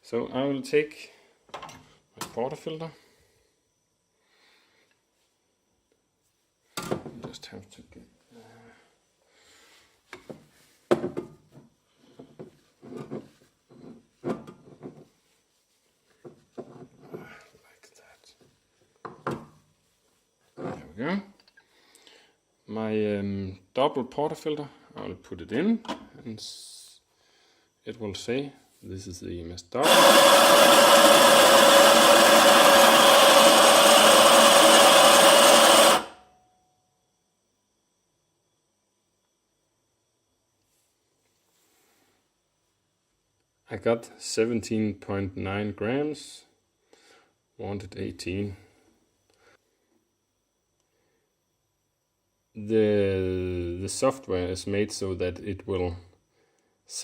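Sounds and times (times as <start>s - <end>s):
portafilter knocking: 29.8s - 36.1s
coffee grinder motor grinding: 29.8s - 36.2s
portafilter clattering and rubbing: 29.8s - 36.2s.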